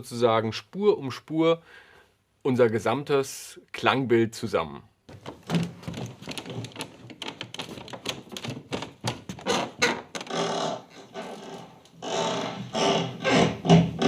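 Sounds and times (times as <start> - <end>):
small clicks taps and knocks: 5.1 - 10.3.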